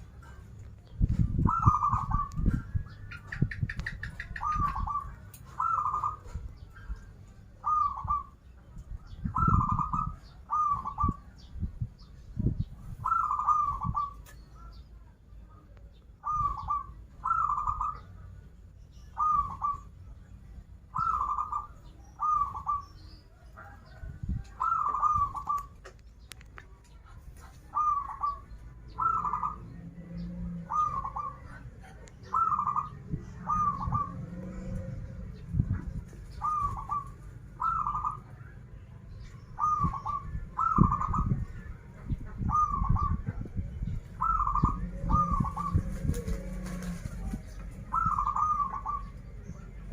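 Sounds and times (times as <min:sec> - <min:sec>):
dove cooing: 0:00.0 - 0:11.4, 0:12.4 - 0:14.8, 0:16.2 - 0:18.3, 0:19.1 - 0:20.0, 0:20.9 - 0:38.6, 0:39.5 - 0:49.9
low rumble: 0:28.4 - 0:49.9.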